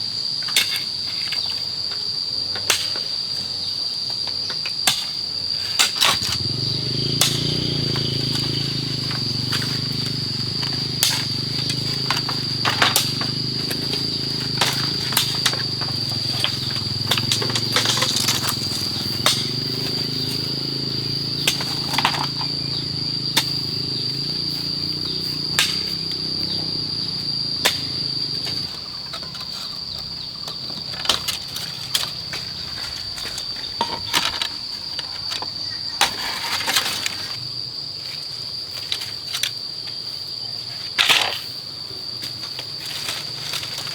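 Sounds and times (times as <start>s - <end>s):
cicadas droning: 0.0s - 43.9s
wood and bamboo knocking: 6.1s - 20.6s.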